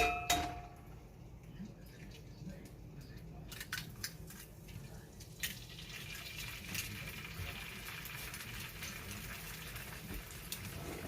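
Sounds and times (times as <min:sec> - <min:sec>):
egg sizzling in a skillet: 0:05.2 - 0:11.0.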